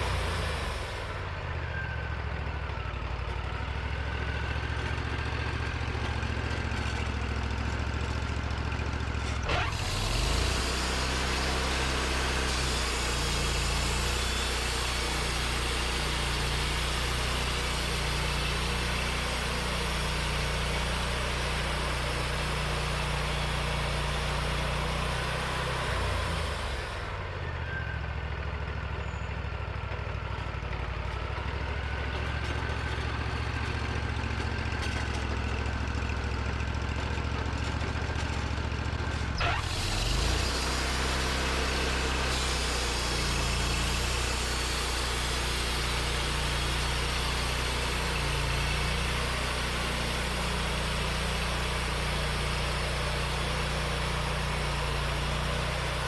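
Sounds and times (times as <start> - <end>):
sawmill engine running: 0.0 - 56.0.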